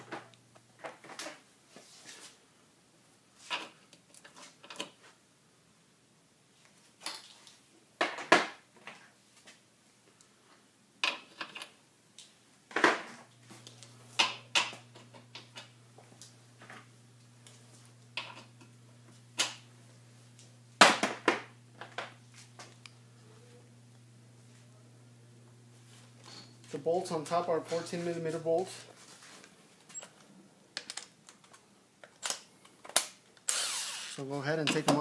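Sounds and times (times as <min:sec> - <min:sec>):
steady low hum: 0:13.2 - 0:29.0.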